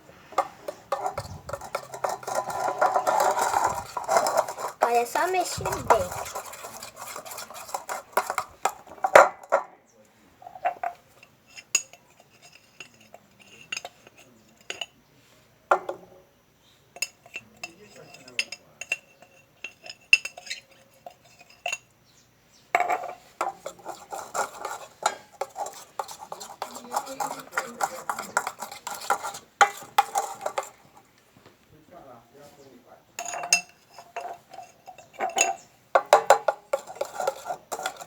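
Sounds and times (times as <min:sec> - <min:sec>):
spoon stirring in a bowl: 0:00.3 - 0:09.2, 0:10.6 - 0:14.9, 0:17.0 - 0:21.9, 0:22.8 - 0:31.1, 0:33.2 - 0:38.0
spoon clinking against bowl: 0:17.0 - 0:21.9, 0:33.2 - 0:38.0.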